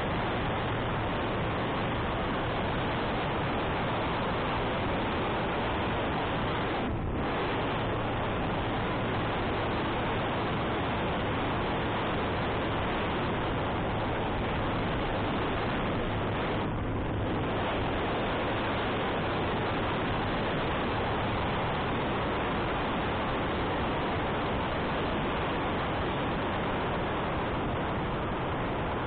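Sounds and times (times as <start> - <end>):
motorcycle engine hum: 0.0 - 29.0
wind rushing over microphone: 0.0 - 29.0.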